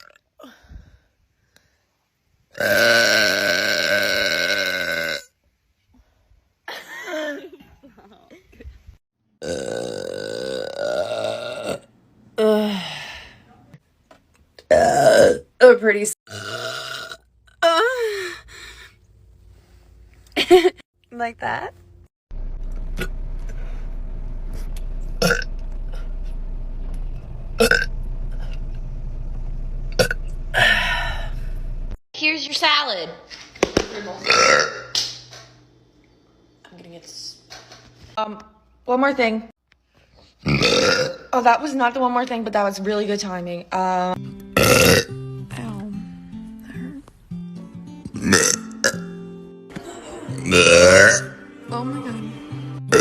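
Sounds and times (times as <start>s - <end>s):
woman burping: 2.6s - 5.3s, 9.4s - 12.6s, 14.6s - 15.5s, 16.3s - 18.0s, 25.2s - 25.5s, 27.6s - 27.9s, 30.0s - 31.3s, 34.2s - 34.9s, 40.4s - 41.3s, 44.6s - 45.1s, 48.1s - 49.1s, 49.7s - 51.4s
steady low hum: 18.3s - 32.0s.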